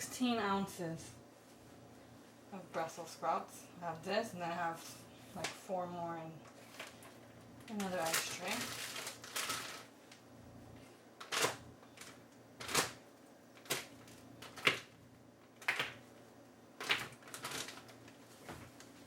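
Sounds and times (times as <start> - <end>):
frozen food cubes clacking: 7.6 - 9.9, 16.8 - 18.0.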